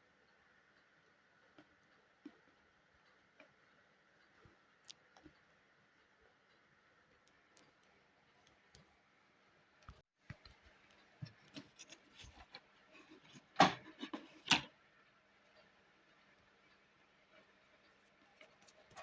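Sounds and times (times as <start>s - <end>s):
plastic parts clicking and knocking: 11.2s - 14.7s.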